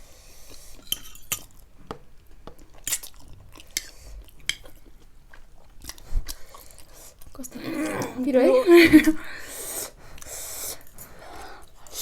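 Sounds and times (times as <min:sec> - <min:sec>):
close chewing with mouth smacks: 0:00.2 - 0:07.6, 0:10.0 - 0:12.0.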